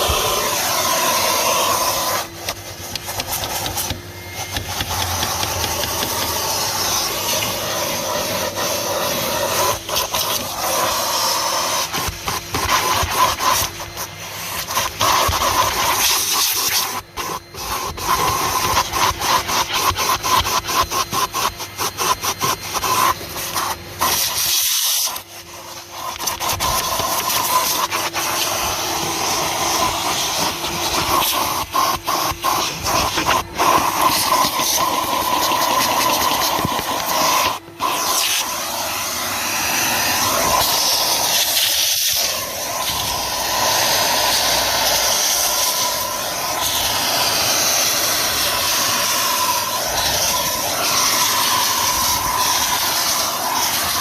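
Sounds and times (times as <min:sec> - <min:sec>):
vacuum cleaner running: 0:00.0 - 0:54.0.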